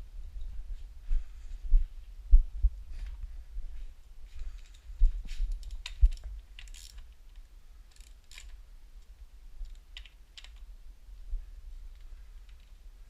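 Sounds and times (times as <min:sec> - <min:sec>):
heavy low thumps: 0:00.0 - 0:03.8.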